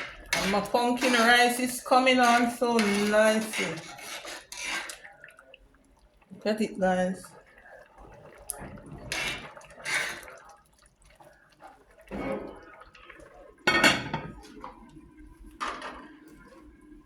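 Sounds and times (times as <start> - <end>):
utensil scraping pot of rice: 0.0 - 5.1, 9.1 - 10.4.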